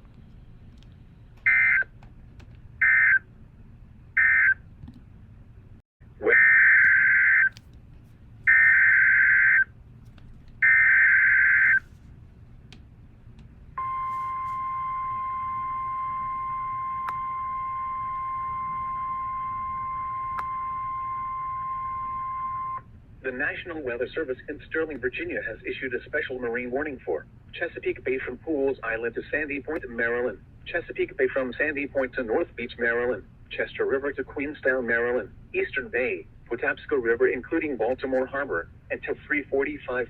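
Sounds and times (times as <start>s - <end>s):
loud steady warning alarm tone: 1.4s - 1.9s, 2.8s - 3.3s, 4.2s - 4.6s, 6.2s - 7.5s, 8.5s - 9.7s, 10.6s - 11.8s, 13.8s - 22.9s.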